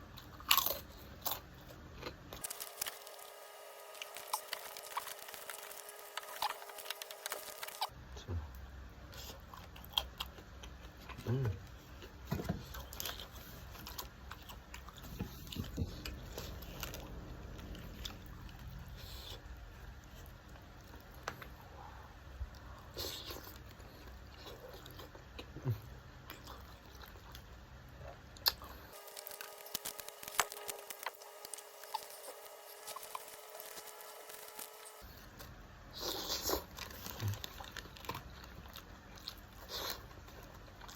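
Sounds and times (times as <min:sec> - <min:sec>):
person chewing close up: 0:00.1 - 0:07.9, 0:09.1 - 0:40.9
low background rumble: 0:08.0 - 0:28.9.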